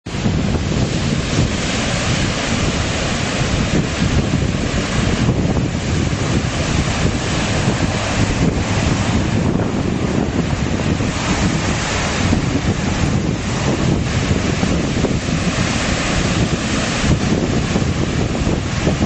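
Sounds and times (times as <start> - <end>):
ocean surf washing: 0.0 - 19.0
wind buffeting microphone: 0.0 - 19.0.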